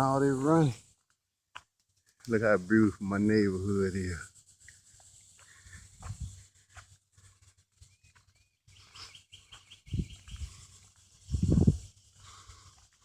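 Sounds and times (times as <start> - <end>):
songbird chirping and trilling: 7.8 - 11.0.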